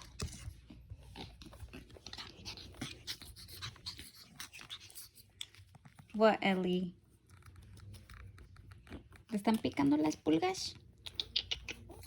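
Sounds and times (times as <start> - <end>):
puppy snuffling: 0.0 - 6.1
puppy scratchy clicks and rustles: 0.0 - 12.0.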